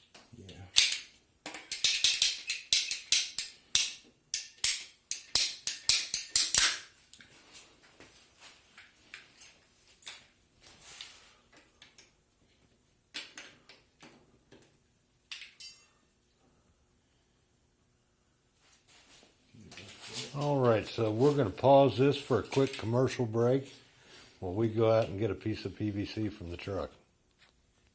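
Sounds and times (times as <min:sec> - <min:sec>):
plastic fittings clicking and knocking: 0:00.8 - 0:06.6
rustling: 0:18.6 - 0:21.6.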